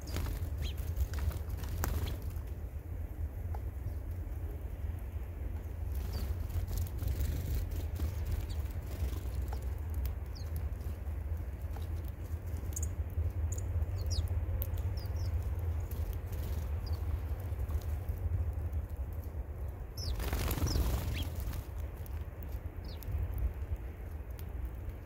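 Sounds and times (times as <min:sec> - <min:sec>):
small birds chirping: 0:00.0 - 0:02.5, 0:05.6 - 0:25.0
steady low rumble: 0:00.0 - 0:25.0
pecking and fluttering clicks: 0:06.0 - 0:25.0.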